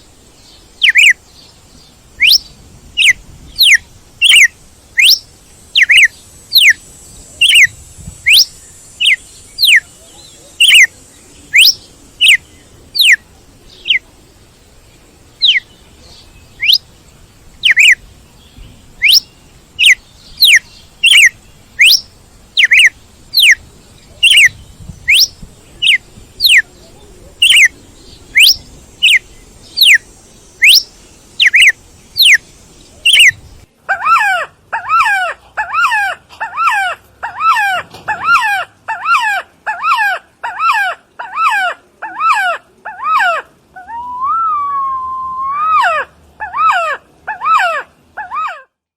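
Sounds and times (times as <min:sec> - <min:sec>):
bird whistling downward notes: 0:00.8 - 0:01.2, 0:02.2 - 0:05.2, 0:05.8 - 0:06.8, 0:07.4 - 0:09.9, 0:10.6 - 0:10.9, 0:11.5 - 0:12.4, 0:13.0 - 0:13.2, 0:15.4 - 0:15.7, 0:16.6 - 0:16.9, 0:17.6 - 0:18.0, 0:19.0 - 0:23.6, 0:24.2 - 0:26.7, 0:27.4 - 0:32.4, 0:33.0 - 0:33.4, 0:44.0 - 0:45.8
lower wavering bird call: 0:00.8 - 0:01.2, 0:02.2 - 0:14.1, 0:15.4 - 0:16.9, 0:17.6 - 0:18.0, 0:19.0 - 0:33.4, 0:43.0 - 0:48.6.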